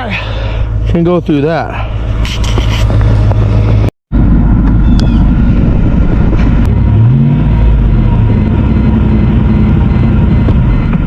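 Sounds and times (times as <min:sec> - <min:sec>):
car engine revving in snow: 0:02.2 - 0:11.0.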